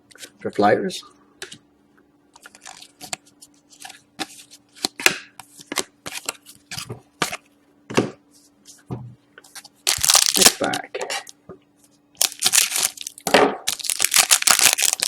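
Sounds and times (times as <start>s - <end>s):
faint steady hum: 0.0s - 15.0s
cards and packaging rustling: 2.4s - 7.4s, 9.5s - 10.8s, 12.2s - 15.0s.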